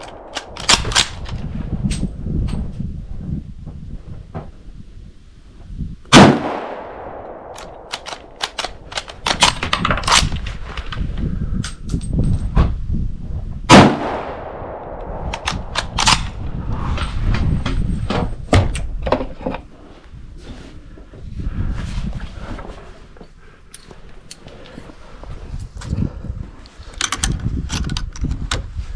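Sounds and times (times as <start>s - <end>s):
rifle action clicking: 0.0s - 1.3s, 7.2s - 10.4s, 14.9s - 16.4s
rifle shots: 6.1s - 9.4s, 13.7s - 16.4s.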